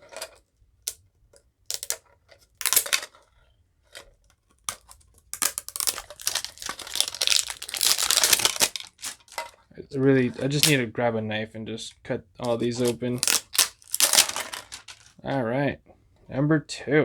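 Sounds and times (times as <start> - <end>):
plastic wrapping crinkling and tearing: 1.7 - 2.0, 2.6 - 3.2, 4.5 - 9.6, 10.2 - 10.8, 12.4 - 15.2.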